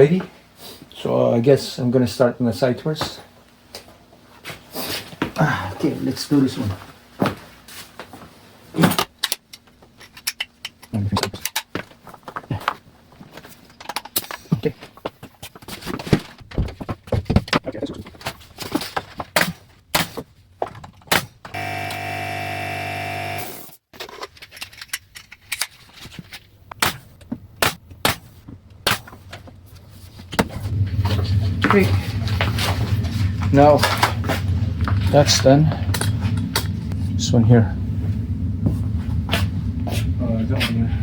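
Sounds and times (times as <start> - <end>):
motor hum: 21.5 - 23.8.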